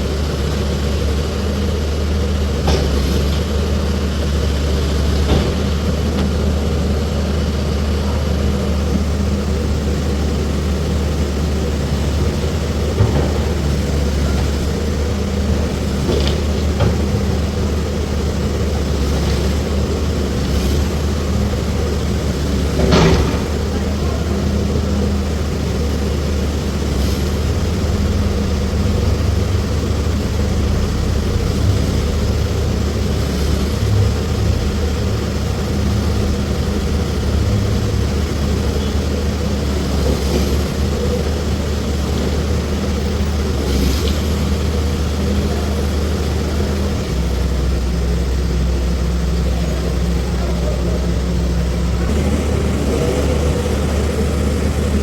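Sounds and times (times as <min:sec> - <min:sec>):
vehicle engine droning: 0:00.0 - 0:55.0.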